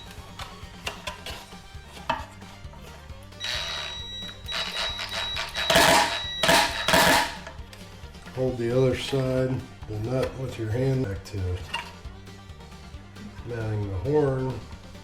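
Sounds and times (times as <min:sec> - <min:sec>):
background music: 0:00.0 - 0:15.0
cordless drill driving bolts: 0:03.4 - 0:07.4.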